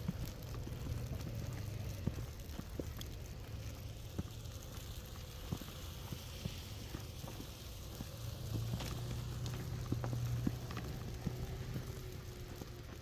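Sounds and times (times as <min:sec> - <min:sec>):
footsteps crunching through snow: 0:05.2 - 0:13.0.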